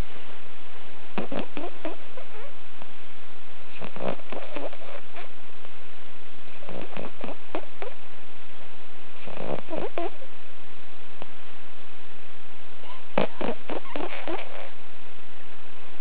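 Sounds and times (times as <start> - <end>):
dog snoring: 1.2 - 2.5, 3.7 - 5.3, 6.5 - 8.0, 9.2 - 10.2, 12.8 - 14.8.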